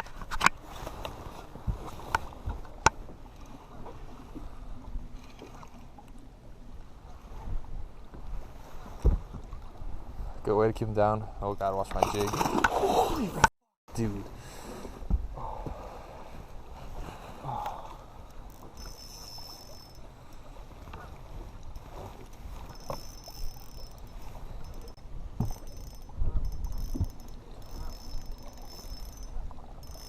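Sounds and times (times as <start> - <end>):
water lapping around boat: 0.0 - 30.0
wind buffeting microphone: 20.7 - 29.8.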